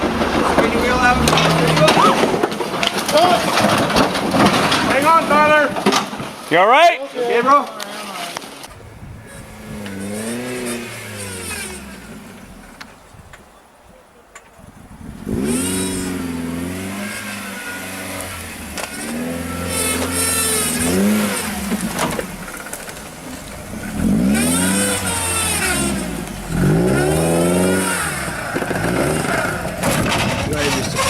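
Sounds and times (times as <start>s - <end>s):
engine revving hard: 0.0s - 2.5s, 9.2s - 12.8s, 14.9s - 31.0s.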